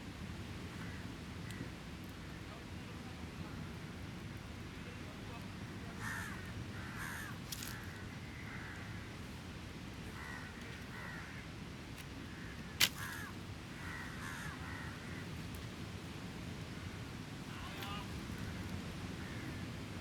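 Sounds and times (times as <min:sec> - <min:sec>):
crows cawing: 0:06.0 - 0:09.0, 0:10.1 - 0:11.5, 0:12.3 - 0:15.3, 0:17.8 - 0:19.7.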